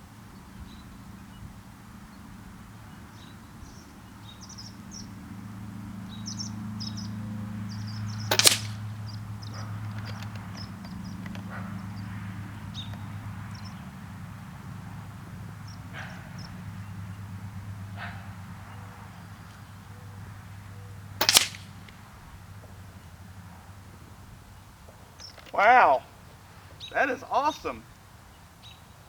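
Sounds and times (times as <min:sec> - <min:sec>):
air rifle shot: 0:08.3 - 0:08.9, 0:21.2 - 0:22.0.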